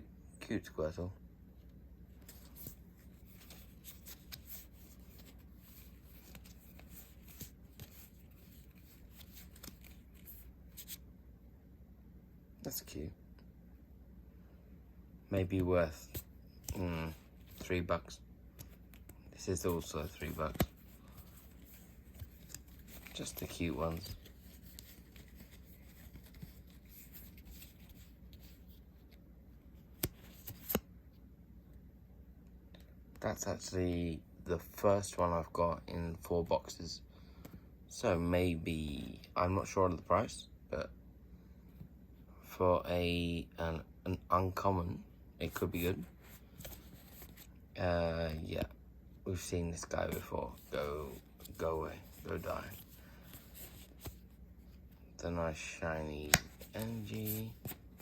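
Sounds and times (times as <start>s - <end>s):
low steady hum: 0.0s - 58.0s
trading cards rustling and clicking: 2.2s - 11.0s, 16.0s - 17.9s, 18.6s - 28.8s, 29.9s - 30.8s, 45.5s - 47.5s, 49.8s - 55.0s, 55.6s - 58.0s.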